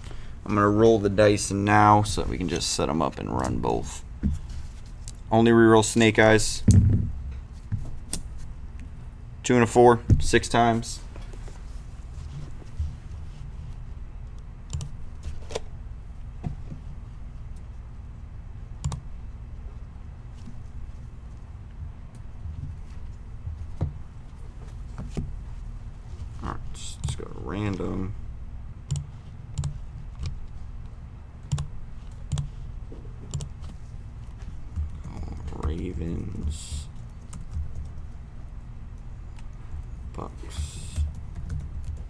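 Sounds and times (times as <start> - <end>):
steady low hum: 0.0 - 42.0
keyboard and mouse clicks: 14.7 - 15.0, 18.8 - 19.0, 28.9 - 30.4, 31.4 - 32.6, 33.3 - 33.6.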